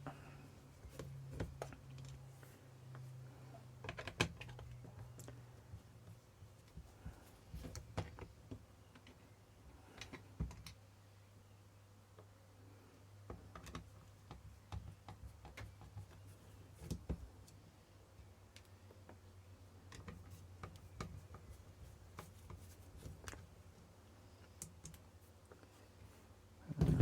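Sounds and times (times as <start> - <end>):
low steady hum: 25.1 - 27.0.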